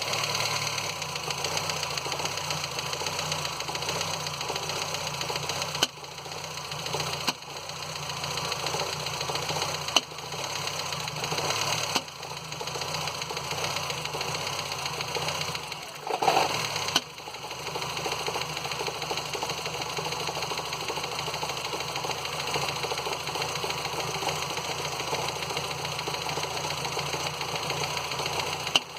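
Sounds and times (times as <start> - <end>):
car engine running: 0.0 - 28.9
sharp engine clicks: 1.4 - 7.7, 8.6 - 10.3, 11.3 - 28.9.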